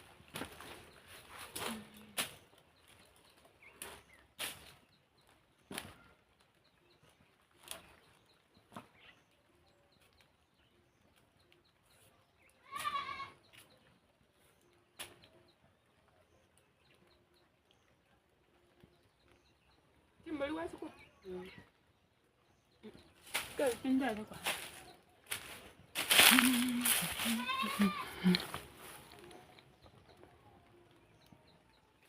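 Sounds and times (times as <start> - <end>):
goat bleating: 12.6 - 13.4, 27.0 - 28.5.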